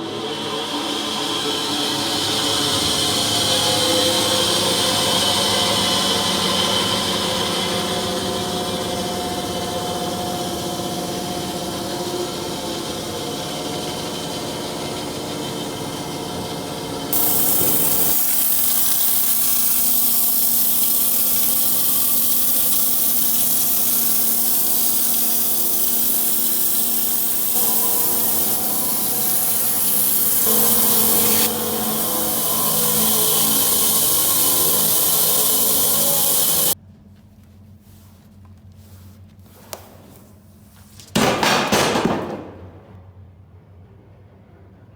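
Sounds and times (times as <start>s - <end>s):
sawmill machine drone: 0.0s - 36.8s
saw blade hissing through log: 17.1s - 36.8s.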